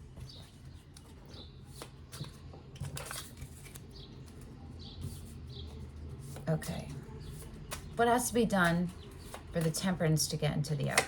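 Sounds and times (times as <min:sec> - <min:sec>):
cards being shuffled: 0:00.2 - 0:05.3.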